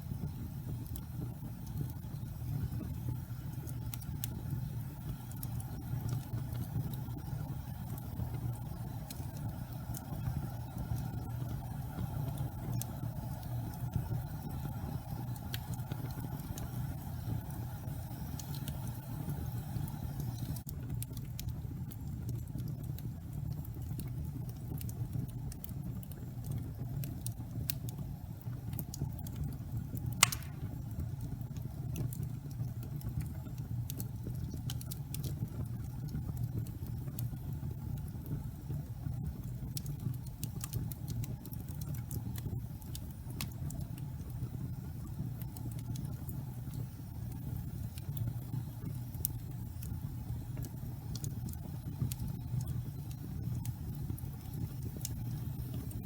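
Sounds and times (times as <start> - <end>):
wood fire crackling: 0.0 - 56.0
fire pop: 30.0 - 32.2.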